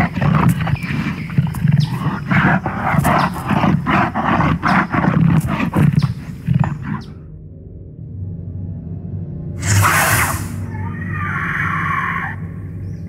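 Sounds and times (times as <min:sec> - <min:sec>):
deep growling dinosaur roars: 0:09.6 - 0:12.4.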